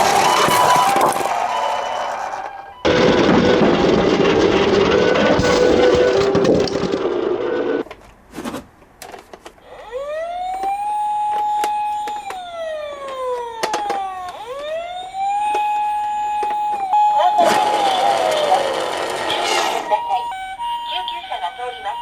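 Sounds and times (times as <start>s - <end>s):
toy electronic siren wailing: 0.0s - 2.9s, 9.6s - 22.0s.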